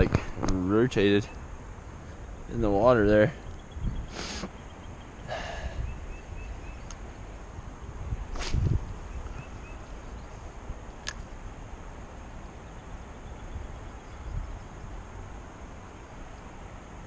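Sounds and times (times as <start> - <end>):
wind on microphone: 3.6 - 4.3, 5.2 - 9.6, 13.4 - 15.1
sharp click: 11.0 - 11.3.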